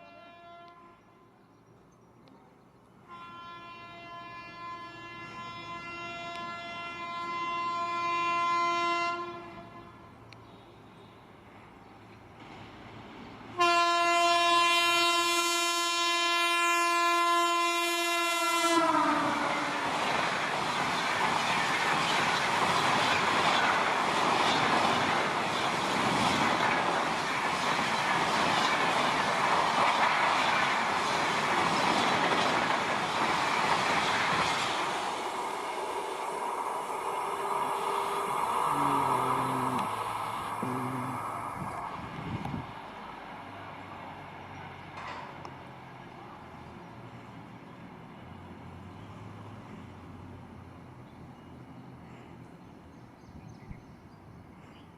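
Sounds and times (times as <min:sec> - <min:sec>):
train horn blast: 0:00.0 - 0:01.3, 0:03.0 - 0:10.8, 0:13.6 - 0:19.9, 0:36.0 - 0:40.0
train wheel and rail clatter: 0:19.3 - 0:38.6, 0:41.9 - 0:48.4.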